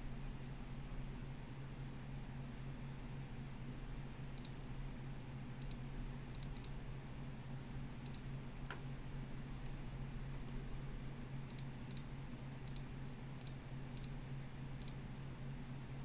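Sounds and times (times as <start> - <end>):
low electrical hum: 0.0 - 16.0
computer mouse clicking: 4.4 - 4.6, 5.6 - 6.8, 8.0 - 8.8, 11.5 - 14.2, 14.8 - 15.0.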